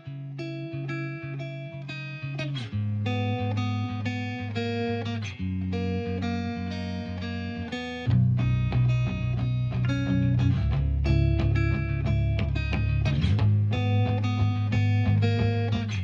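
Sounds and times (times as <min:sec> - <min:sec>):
plucked guitar: 0:00.0 - 0:16.0
bass line: 0:08.1 - 0:16.0.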